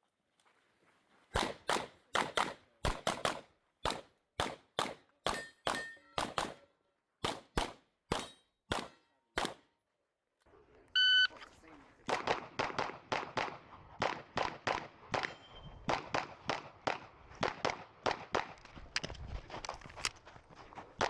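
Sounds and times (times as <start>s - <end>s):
rapid pistol fire: 1.4s - 6.6s, 7.2s - 9.6s, 12.1s - 15.3s.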